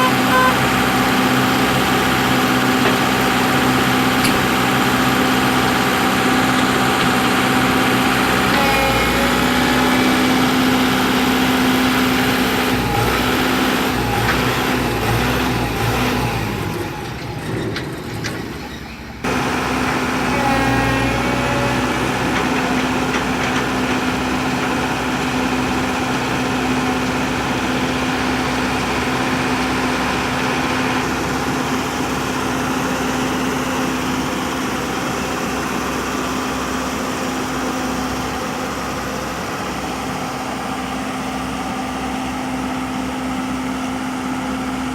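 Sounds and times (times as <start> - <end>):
vehicle engine humming: 0.0 - 35.0.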